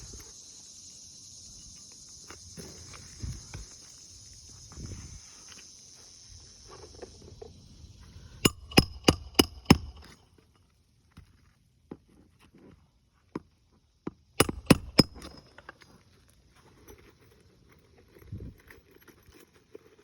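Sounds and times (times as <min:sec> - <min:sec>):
hammer striking shingle roof: 0:08.4 - 0:10.2, 0:14.4 - 0:15.4.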